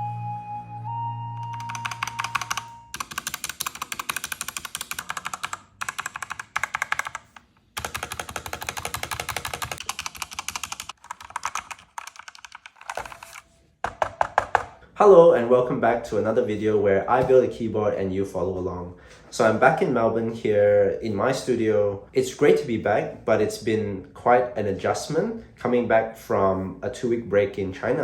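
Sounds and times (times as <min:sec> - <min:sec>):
mechanical keyboard typing: 0:01.4 - 0:14.7.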